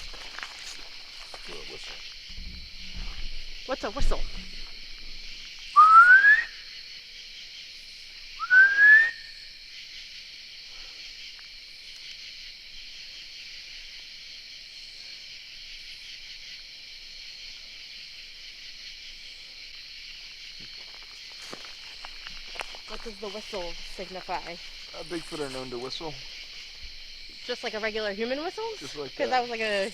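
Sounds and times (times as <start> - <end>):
crickets and katydids chirring: 0.0 - 29.9
person whistling upward: 5.8 - 6.6, 8.4 - 9.3.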